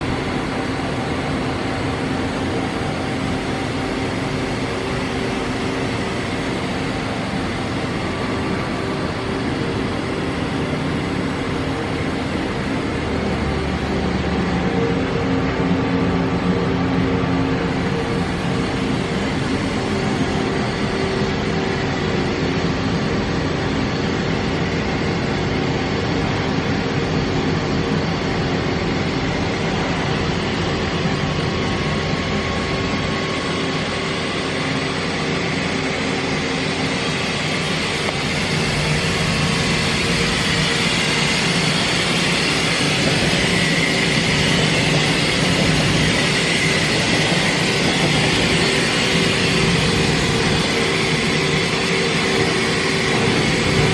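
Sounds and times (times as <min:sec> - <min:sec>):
machining center humming: 0:00.0 - 0:53.9.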